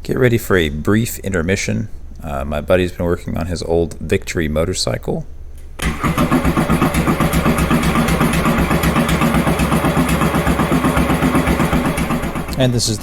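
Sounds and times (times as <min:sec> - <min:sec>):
motorcycle engine running: 0:05.8 - 0:13.0.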